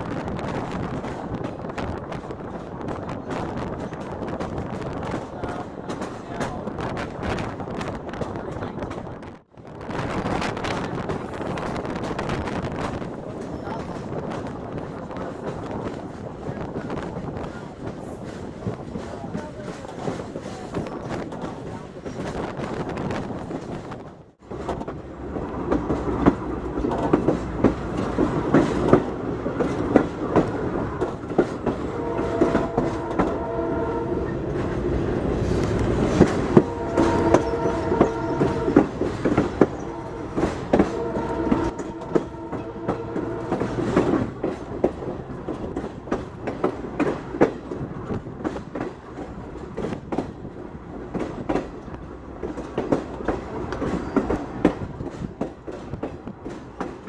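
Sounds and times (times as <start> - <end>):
train wheels clicking on rail joints: 0.0 - 57.0
locomotive air horn blasts: 31.8 - 34.4, 36.5 - 44.0.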